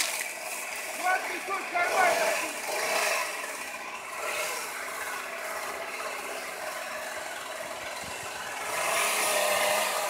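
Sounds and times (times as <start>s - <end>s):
saw cutting tree branch: 0.0s - 10.0s.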